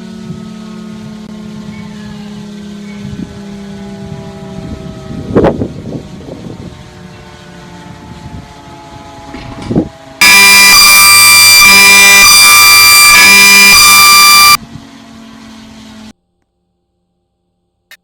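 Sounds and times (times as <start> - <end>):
loud distorted blaring tones: 10.2 - 14.6
steady tone: 10.2 - 14.6.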